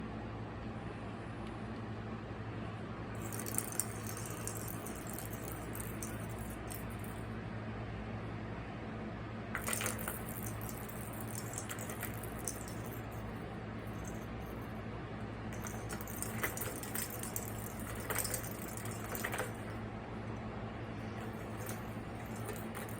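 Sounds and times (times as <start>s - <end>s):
cat toy rattling and clicking: 3.2s - 7.2s, 9.6s - 14.6s, 15.5s - 19.8s, 21.0s - 22.9s.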